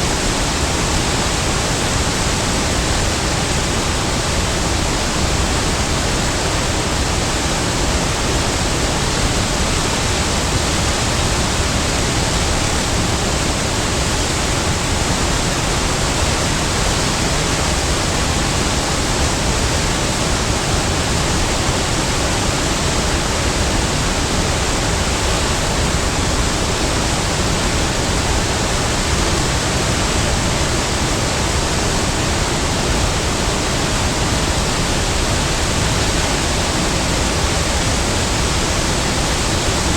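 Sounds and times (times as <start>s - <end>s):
large waterfall rushing: 0.0s - 39.9s.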